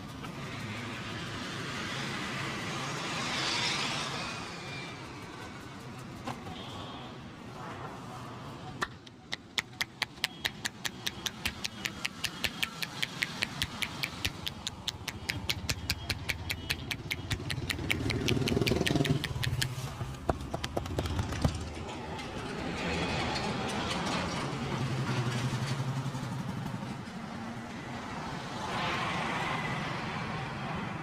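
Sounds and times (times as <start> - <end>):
low rumble of street traffic: 0.0 - 31.0
hands slapping a head: 8.8 - 19.9.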